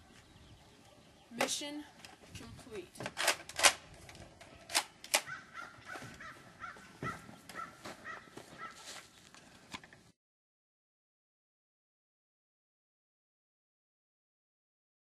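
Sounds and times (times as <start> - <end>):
sharp clicks: 3.1 - 5.3
bird calling: 5.2 - 8.9.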